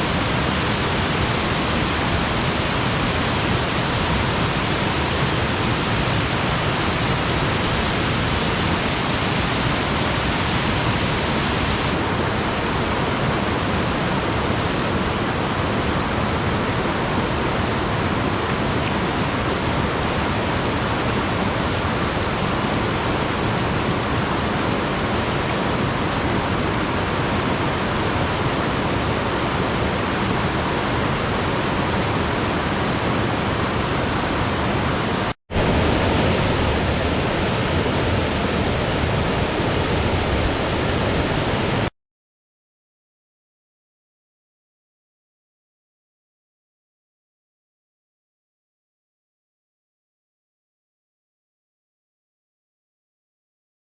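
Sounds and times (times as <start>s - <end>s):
waterfall roaring: 0.0s - 41.9s.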